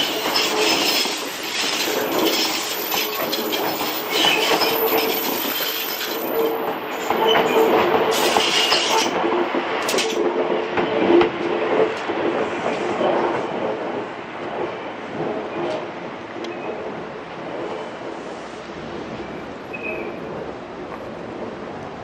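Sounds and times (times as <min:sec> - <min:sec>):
wheel squeal: 0:00.0 - 0:09.1, 0:19.2 - 0:20.2
train wheels clacking over rail joints: 0:00.0 - 0:22.0.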